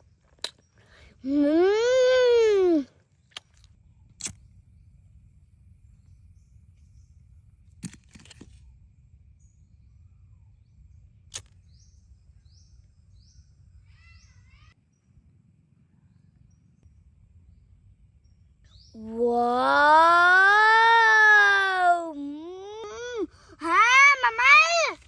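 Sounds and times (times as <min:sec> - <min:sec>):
low steady rumble: 0:03.0 - 0:07.8, 0:08.4 - 0:19.4
faint high bird chirps: 0:09.4 - 0:21.6.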